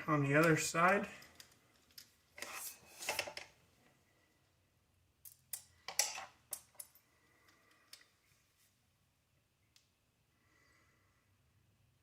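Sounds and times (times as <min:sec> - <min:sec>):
small parts clicking and rattling: 0:00.4 - 0:03.6, 0:05.2 - 0:08.3.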